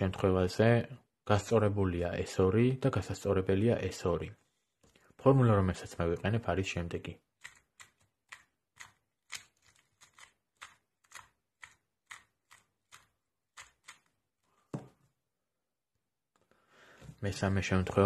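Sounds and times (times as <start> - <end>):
puzzle cube plastic clicks: 7.4 - 14.1.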